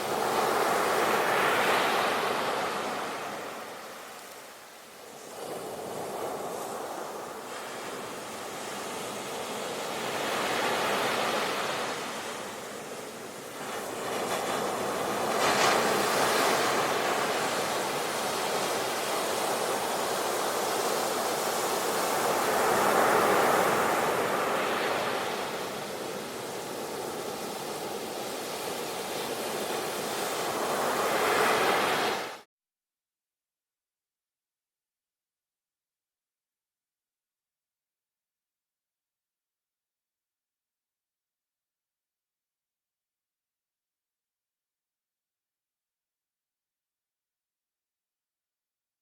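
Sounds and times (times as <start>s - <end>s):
ocean waves washing ashore: 0.0s - 32.5s.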